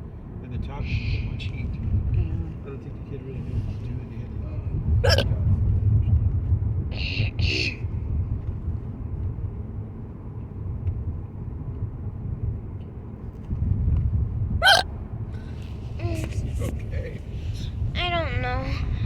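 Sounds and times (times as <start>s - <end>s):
person hiccuping: 5.1s - 5.3s, 14.6s - 14.8s.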